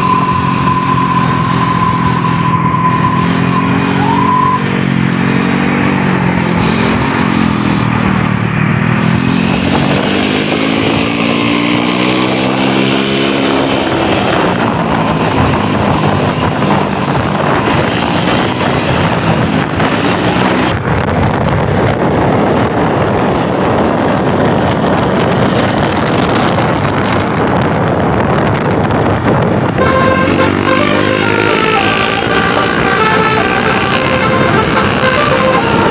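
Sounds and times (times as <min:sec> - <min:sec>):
musical multi-tone bus horn: 0:00.0 - 0:04.8, 0:29.8 - 0:35.9
bus engine revving: 0:00.0 - 0:35.9
engine and road noise rumble: 0:00.0 - 0:35.9.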